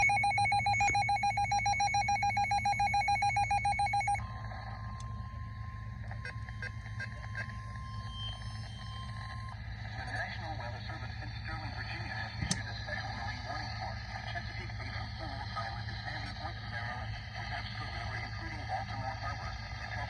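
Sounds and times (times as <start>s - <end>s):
fast-trilling electronic alarm: 0.0s - 4.2s
steady single warning tone: 0.0s - 9.8s.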